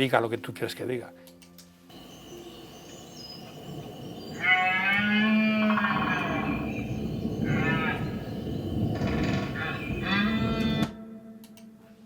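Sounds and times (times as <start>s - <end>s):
outdoor background noise: 1.2s - 12.0s
long animal call: 3.6s - 10.9s.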